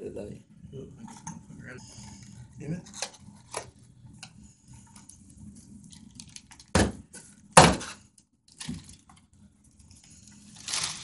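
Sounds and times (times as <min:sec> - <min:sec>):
faint packaging rustling: 0:08.5 - 0:11.0.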